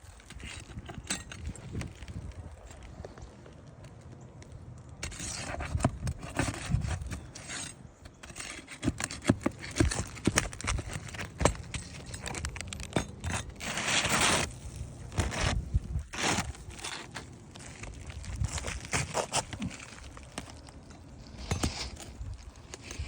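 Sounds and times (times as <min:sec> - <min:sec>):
tool scraping roof shingles: 0:05.0 - 0:23.0.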